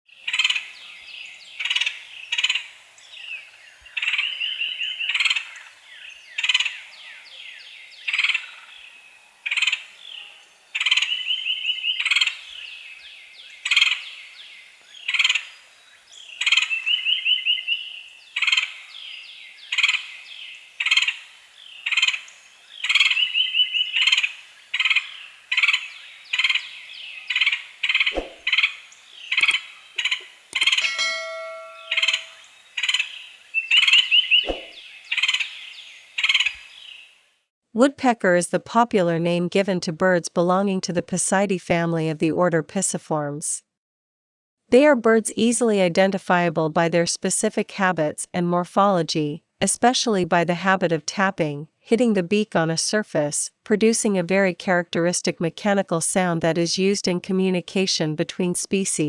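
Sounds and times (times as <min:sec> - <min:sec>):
woodpecker calling: 0:00.2 - 0:37.2.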